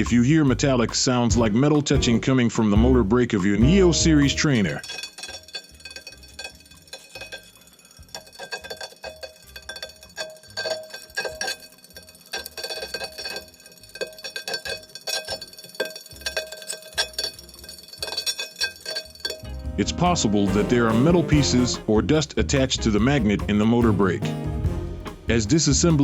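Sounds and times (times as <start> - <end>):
metallic ticking and ringing: 3.4 - 19.6.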